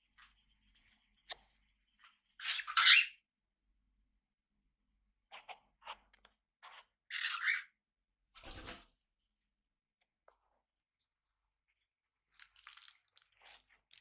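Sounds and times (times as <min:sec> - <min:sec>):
parrots squawking harshly: 0:02.4 - 0:03.1.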